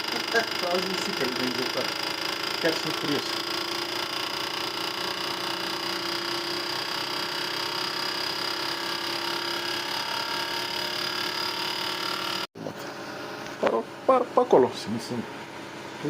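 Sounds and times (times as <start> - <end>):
fuel injectors buzzing: 0.0 - 12.5.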